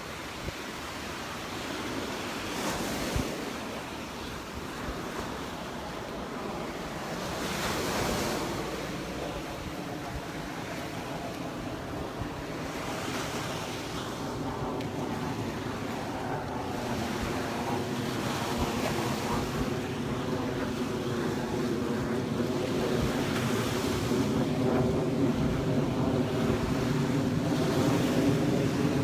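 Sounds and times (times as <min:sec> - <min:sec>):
waves washing onto beach: 0:00.0 - 0:29.0
wind on microphone: 0:00.0 - 0:29.0.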